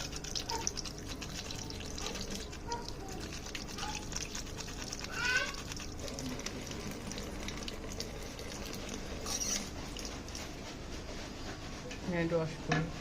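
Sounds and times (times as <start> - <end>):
water running: 0.0 - 11.2
high-pitched squeak: 9.2 - 9.7.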